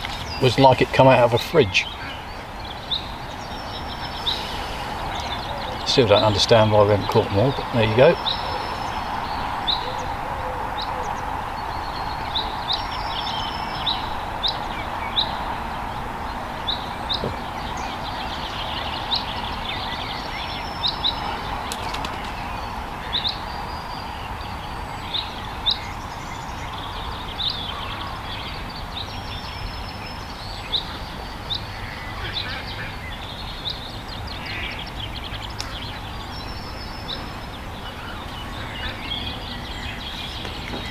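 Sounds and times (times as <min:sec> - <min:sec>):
background hiss: 0:00.0 - 0:09.7
small birds chirping: 0:00.0 - 0:40.9.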